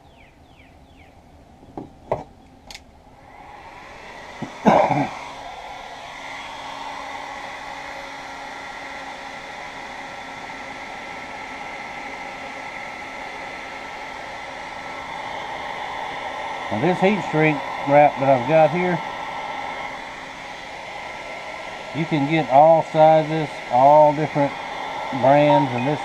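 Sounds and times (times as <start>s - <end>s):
heat gun blowing: 3.2s - 26.0s.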